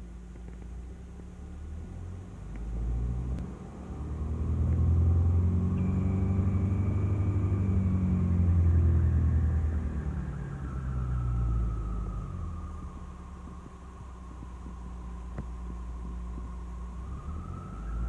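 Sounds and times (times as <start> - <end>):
car engine low rumble: 0.0 - 18.0
faint high whine: 4.8 - 18.0.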